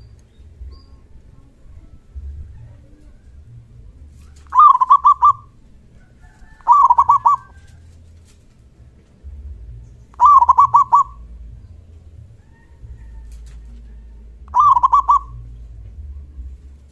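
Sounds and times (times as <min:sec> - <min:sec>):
dove cooing: 0:02.2 - 0:07.8, 0:10.1 - 0:11.6, 0:12.3 - 0:16.6.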